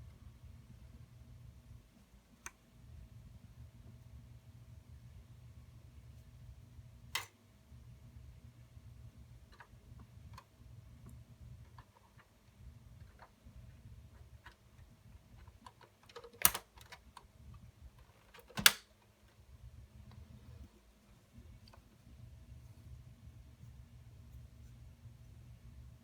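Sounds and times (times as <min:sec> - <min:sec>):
low steady hum: 0:00.0 - 0:26.0
plastic and metal parts clicking: 0:15.3 - 0:17.3, 0:18.0 - 0:18.9.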